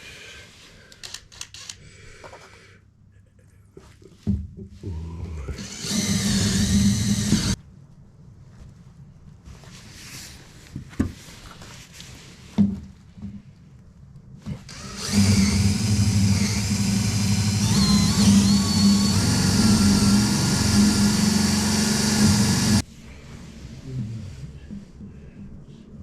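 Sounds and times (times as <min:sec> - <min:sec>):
motor running: 0:05.6 - 0:07.6, 0:14.7 - 0:22.8.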